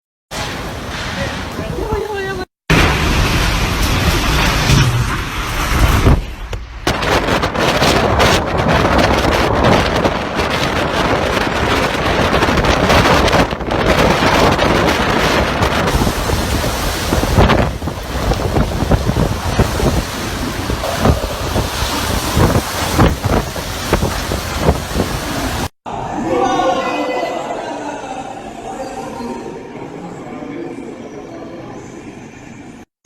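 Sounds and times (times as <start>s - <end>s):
wind buffeting the microphone: 5.7s - 25.7s.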